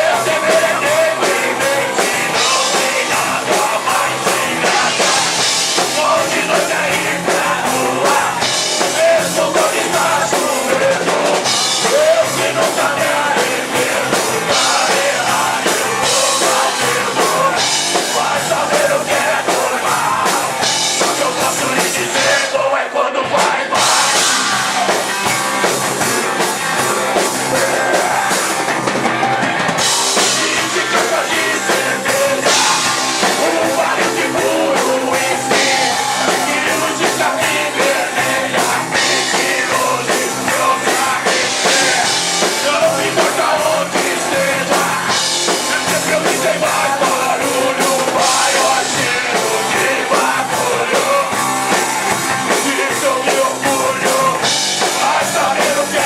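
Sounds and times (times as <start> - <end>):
person singing: 0.0 - 25.0, 26.0 - 28.4, 30.2 - 51.4, 52.5 - 56.0
drum kit: 0.0 - 56.0
guitars: 0.0 - 56.0.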